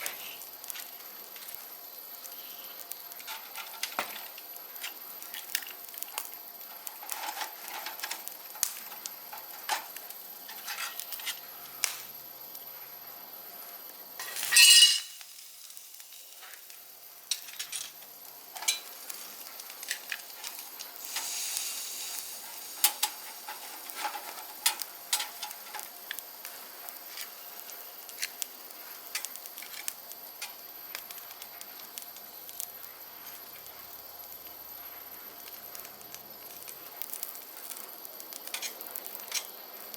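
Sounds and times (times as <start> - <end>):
food sizzling on grill: 0.0 - 39.9
loud hiss: 20.7 - 25.4
utensils clicking against metal: 22.1 - 26.2.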